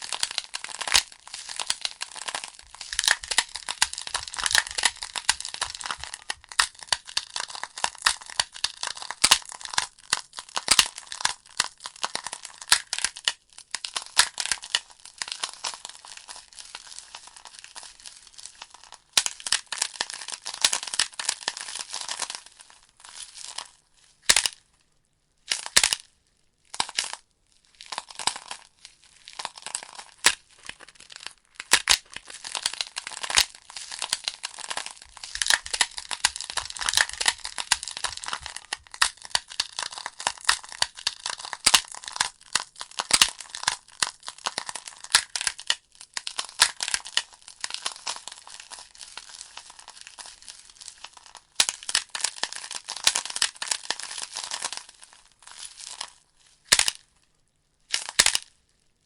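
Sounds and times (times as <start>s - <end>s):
burning logs crackling: 32.6s - 40.9s.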